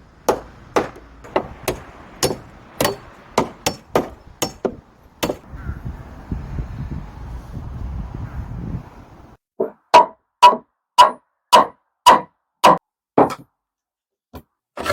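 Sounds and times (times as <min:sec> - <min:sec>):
hammer blows on timber: 0:00.2 - 0:05.6.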